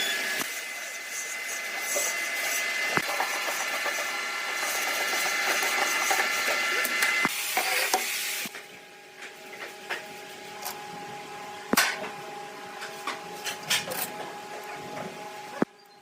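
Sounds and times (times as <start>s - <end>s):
woodworking power tool running: 0.0s - 7.5s.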